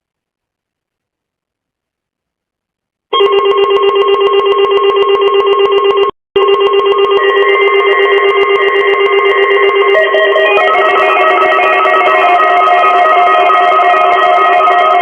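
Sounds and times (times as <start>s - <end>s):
pulsing electronic ringing tone: 3.1s - 15.0s
higher electronic tone: 5.7s - 15.0s.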